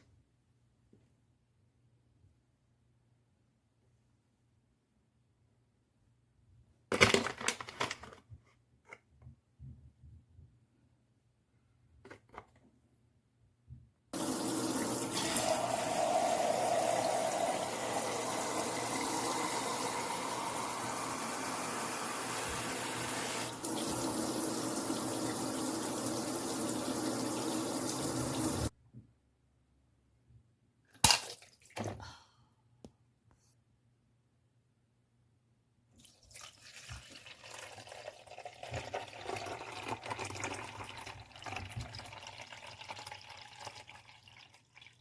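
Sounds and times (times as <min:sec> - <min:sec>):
water running from a tap: 0:14.2 - 0:28.7, 0:36.1 - 0:45.0.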